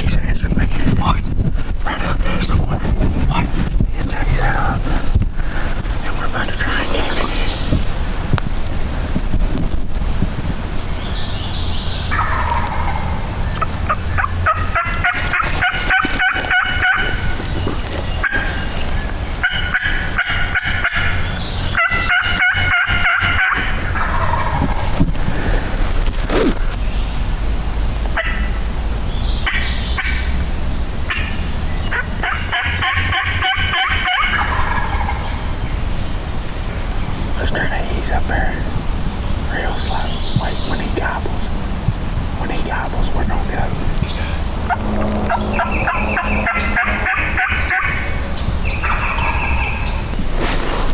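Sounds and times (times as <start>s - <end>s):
hunters' turkey calling: 4.0s - 8.2s, 11.0s - 26.8s, 28.1s - 28.6s, 29.4s - 30.4s, 31.0s - 35.8s, 42.4s - 50.6s
turkey calls: 4.2s - 8.2s, 11.0s - 26.9s, 28.1s - 28.6s, 29.4s - 35.8s, 39.4s - 41.5s, 42.4s - 50.8s
turkey gobbling: 12.0s - 25.0s, 28.2s - 28.6s, 31.1s - 35.6s, 42.4s - 50.2s.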